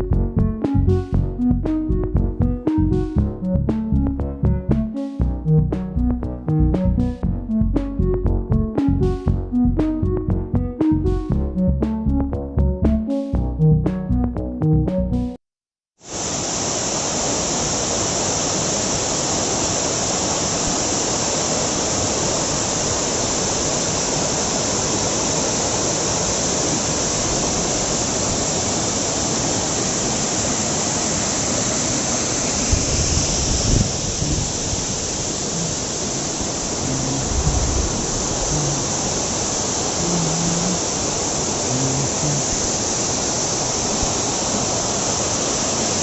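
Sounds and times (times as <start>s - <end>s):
waterfall roaring: 16.1s - 46.0s.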